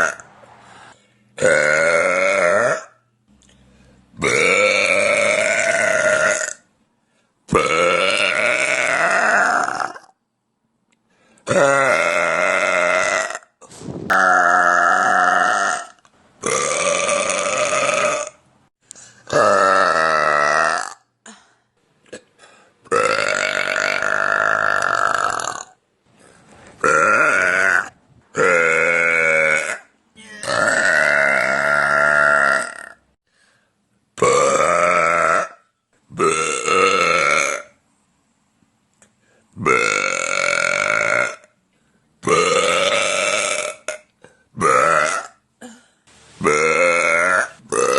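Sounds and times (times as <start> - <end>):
woman burping loudly: 0.0 - 0.2, 1.4 - 3.0, 4.2 - 6.7, 7.5 - 10.2, 11.5 - 18.4, 19.3 - 21.5, 22.9 - 25.8, 26.8 - 33.1, 34.2 - 37.8, 39.6 - 41.6, 42.2 - 47.9.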